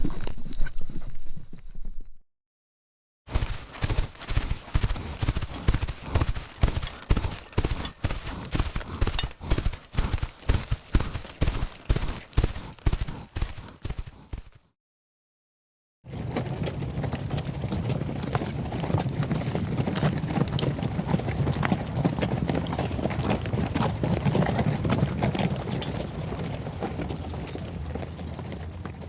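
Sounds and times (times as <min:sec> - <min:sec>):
horse hooves clip-clopping: 0:03.3 - 0:14.6, 0:16.1 - 0:29.0.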